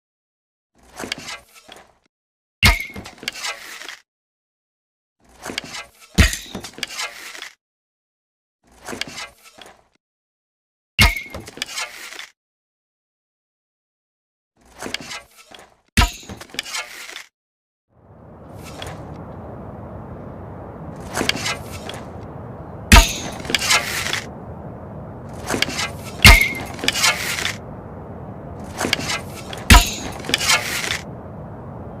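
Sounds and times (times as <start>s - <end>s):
compound bow shot: 22.9s - 24.3s, 25.3s - 27.7s, 28.6s - 31.1s.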